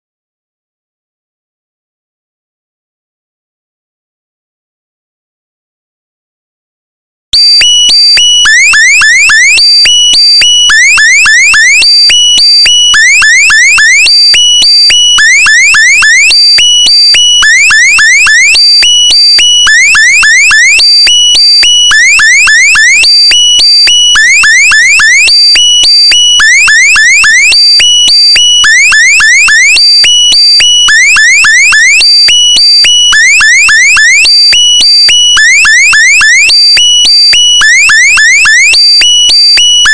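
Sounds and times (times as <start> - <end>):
quick rising alarm chirps: 7.4 - 39.3
steady high alarm beeps: 7.4 - 39.9.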